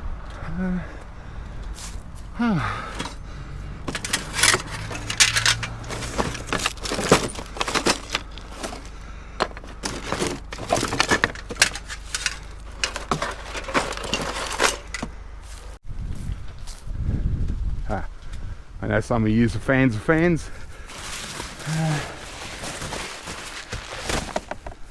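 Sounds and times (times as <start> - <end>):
hard items clattering and knocking: 2.8 - 3.2, 3.8 - 15.2, 20.9 - 24.9.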